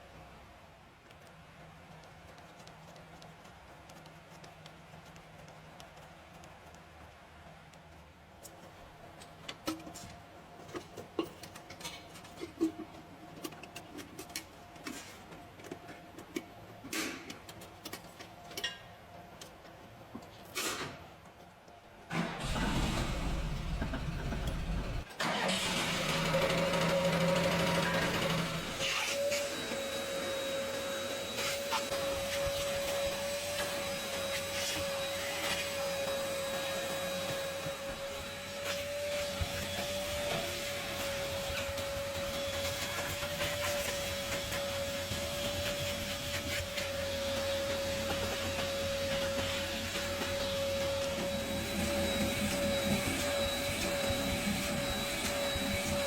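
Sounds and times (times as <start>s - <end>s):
hand tools clicking and tapping: 1.0s - 18.8s
small electric motor whining: 25.9s - 56.0s.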